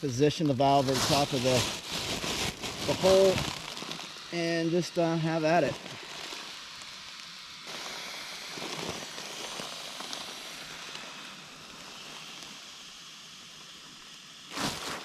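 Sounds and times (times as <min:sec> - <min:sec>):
nylon sack rustling: 0:00.6 - 0:04.2, 0:08.5 - 0:10.3, 0:14.5 - 0:15.0
air rushing through valve: 0:00.6 - 0:06.7, 0:07.5 - 0:13.6.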